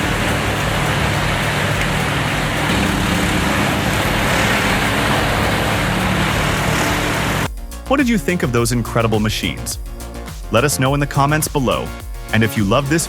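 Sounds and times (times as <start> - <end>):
wood chipper engine drone: 0.0 - 7.5
wood chipper rushing noise: 0.0 - 7.5.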